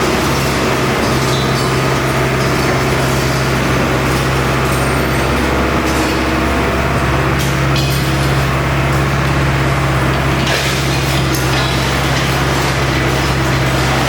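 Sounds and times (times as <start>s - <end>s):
diesel engine running: 0.0s - 14.0s.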